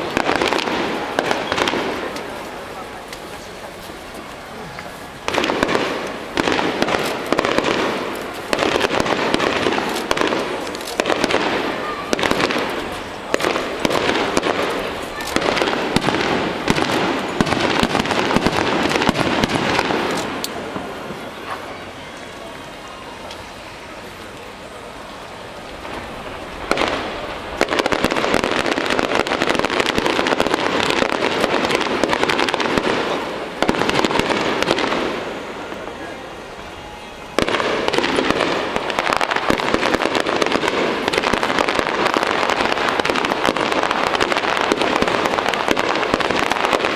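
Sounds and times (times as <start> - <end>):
firework crackling: 0.0 - 46.9.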